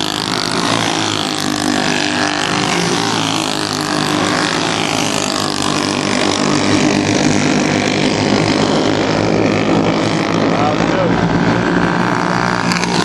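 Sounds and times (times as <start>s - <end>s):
racing engines droning: 0.0s - 13.0s.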